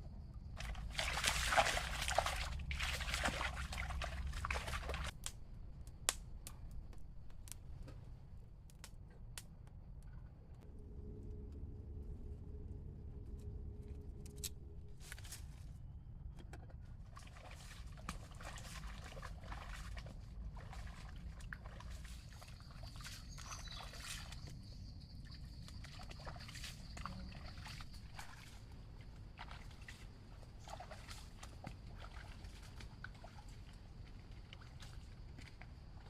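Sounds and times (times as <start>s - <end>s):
water sloshing and splashing: 0.4s - 5.2s, 16.4s - 36.0s.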